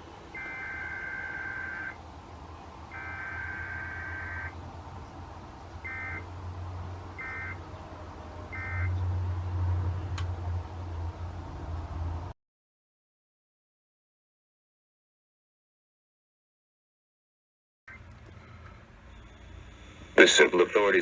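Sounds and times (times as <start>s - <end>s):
steady low hum: 17.9s - 21.0s.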